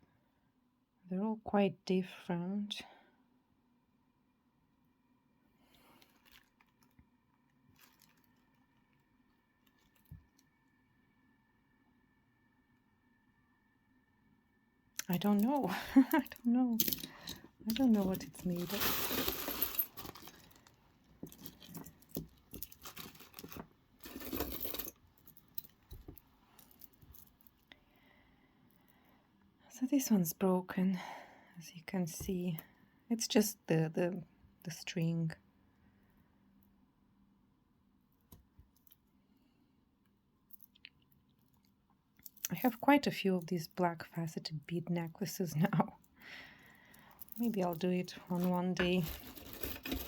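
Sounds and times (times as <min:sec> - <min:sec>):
jewellery clicking and rustling: 0:15.0 - 0:27.7, 0:42.2 - 0:42.8, 0:46.9 - 0:50.0.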